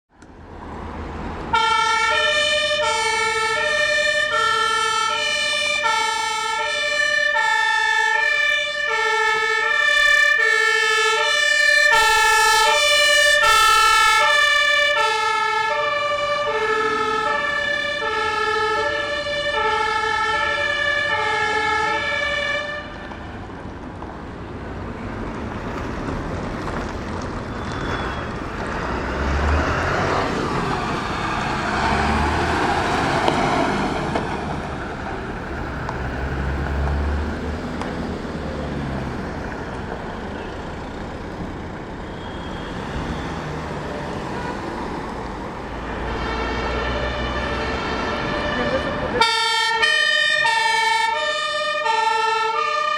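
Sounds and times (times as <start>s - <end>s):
vehicle engine and road noise: 0.1s - 52.9s
two-tone emergency siren: 1.5s - 23.4s, 39.8s - 52.9s.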